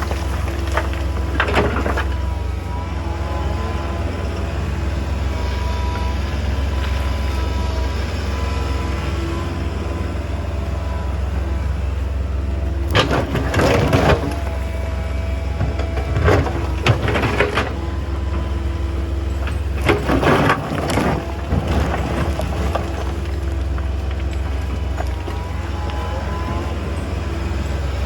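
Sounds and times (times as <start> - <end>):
bucket clattering and scraping stones: 0.0 - 2.2, 12.9 - 14.6, 15.6 - 17.9, 19.3 - 26.7
excavator diesel engine running: 0.0 - 28.0.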